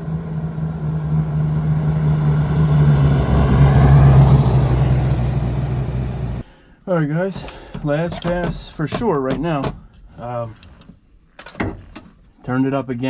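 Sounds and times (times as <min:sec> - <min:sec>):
car engine low drone: 0:00.0 - 0:06.4
rushing noise: 0:00.0 - 0:06.4.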